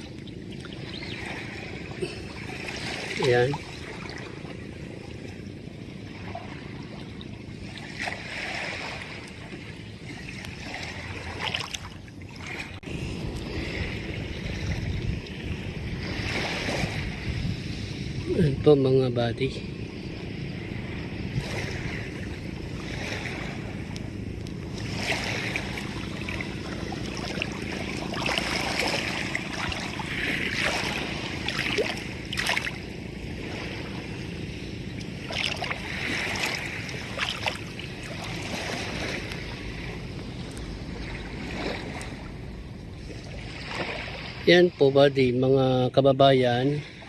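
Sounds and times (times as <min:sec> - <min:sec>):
water washing: 0:00.0 - 0:05.4, 0:06.1 - 0:17.3, 0:21.3 - 0:44.1
steady low rumble: 0:09.1 - 0:43.8
wind noise on microphone: 0:12.6 - 0:34.5.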